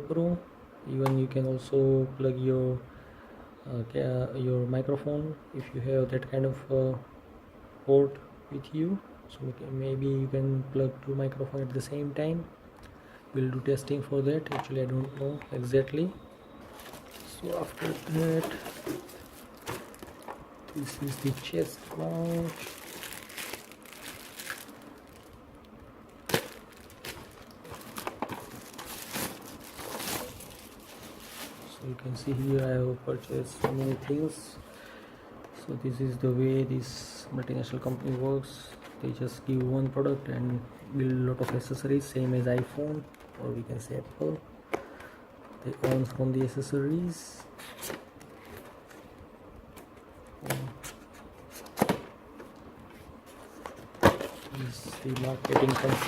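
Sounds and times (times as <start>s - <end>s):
packaging crinkling: 16.6s - 34.1s, 53.3s - 56.0s.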